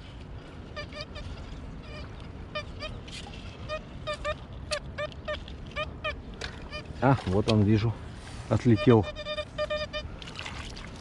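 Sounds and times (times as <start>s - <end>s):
metal detector beeps: 8.5s - 10.1s.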